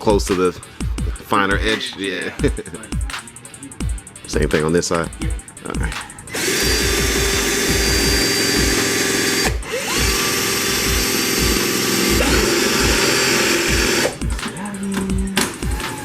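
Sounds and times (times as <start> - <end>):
electronic music with bass kick: 0.0 - 16.0
power drill whining: 6.3 - 14.2.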